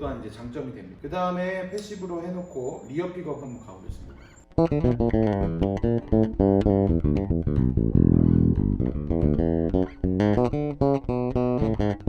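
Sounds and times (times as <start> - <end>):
electric bass plucked notes: 4.5 - 12.0.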